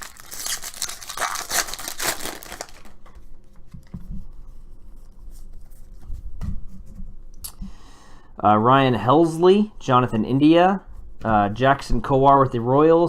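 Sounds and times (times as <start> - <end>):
wrapper tearing and crinkling: 0.0 - 3.1.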